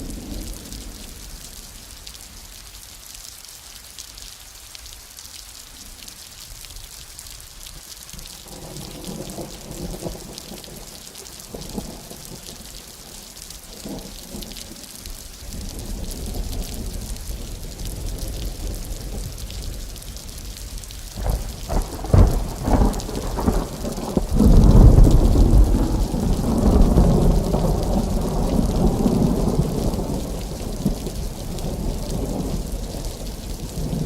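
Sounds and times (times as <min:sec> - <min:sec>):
steady rain hissing: 0:00.0 - 0:34.0
thunder rolling: 0:21.2 - 0:32.6.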